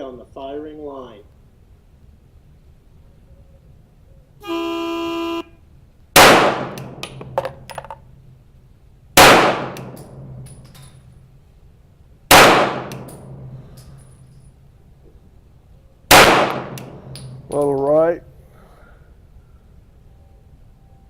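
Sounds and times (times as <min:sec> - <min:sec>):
pistol shots echoing: 0:06.2 - 0:07.4, 0:09.2 - 0:10.4, 0:12.3 - 0:13.6, 0:16.1 - 0:17.5.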